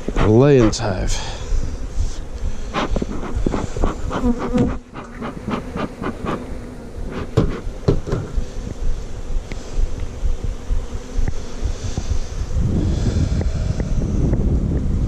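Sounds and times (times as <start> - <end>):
bees buzzing: 0.0 - 15.0
sharp knocks and clicks: 7.4 - 8.4.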